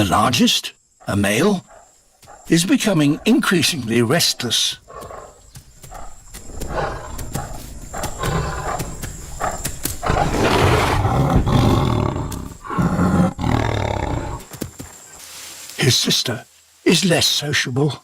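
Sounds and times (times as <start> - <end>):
tiger growling and snarling: 2.5 - 14.5.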